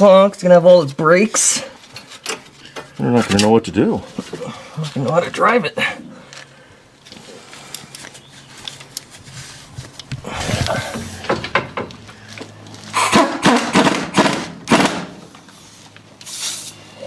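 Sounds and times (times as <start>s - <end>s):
scraping rustle: 7.1s - 11.5s
knocks of tools and metal parts: 10.6s - 15.0s.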